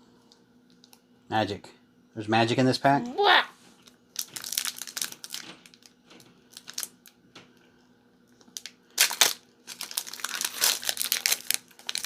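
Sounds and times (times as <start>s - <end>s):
foil wrapper crinkling: 3.8s - 7.2s, 8.4s - 12.0s.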